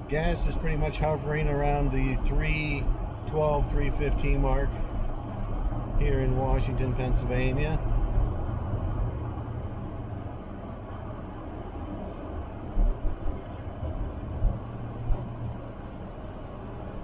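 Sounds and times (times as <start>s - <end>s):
car road and engine rumble: 0.0s - 17.0s.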